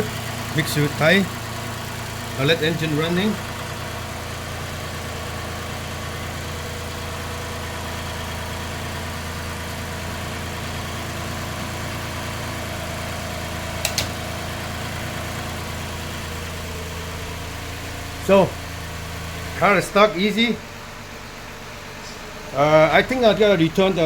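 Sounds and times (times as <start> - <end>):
car engine idling: 0.0 - 24.0
quick sharp clicks: 13.8 - 14.2.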